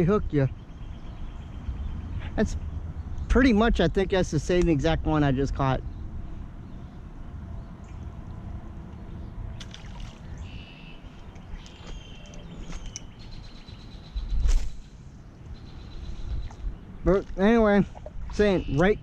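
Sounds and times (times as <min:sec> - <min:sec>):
low rumble of water or wind: 0:00.0 - 0:19.0
faint bird chirps: 0:10.2 - 0:16.8, 0:18.3 - 0:19.0.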